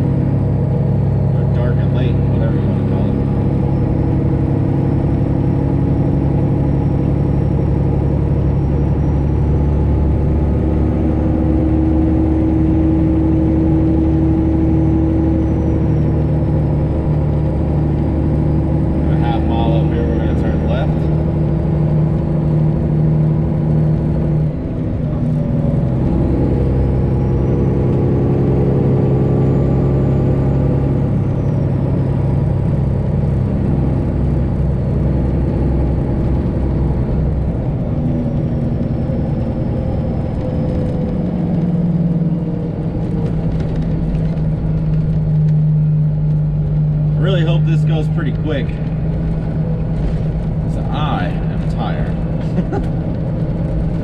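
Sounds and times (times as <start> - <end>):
truck diesel engine running: 0.0 - 54.0.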